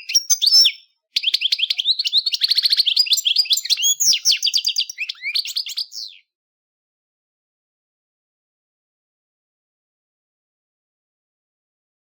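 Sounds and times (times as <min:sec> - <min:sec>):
bird twittering song: 0:00.0 - 0:06.3.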